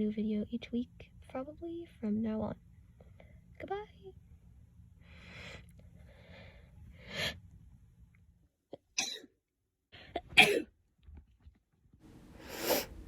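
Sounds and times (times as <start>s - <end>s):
breathy inhalations: 5.0s - 7.4s, 12.3s - 13.0s.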